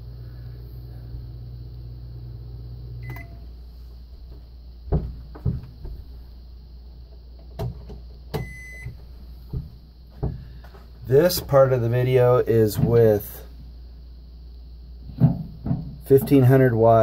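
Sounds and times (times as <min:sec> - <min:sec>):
microwave oven humming: 0:00.0 - 0:17.0
sharp knocks: 0:04.9 - 0:06.0.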